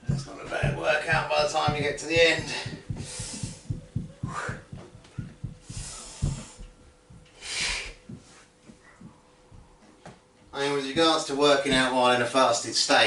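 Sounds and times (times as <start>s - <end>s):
soft low thuds: 0.0s - 10.3s, 10.9s - 12.0s
man breathing hard: 2.4s - 4.8s, 5.5s - 8.2s.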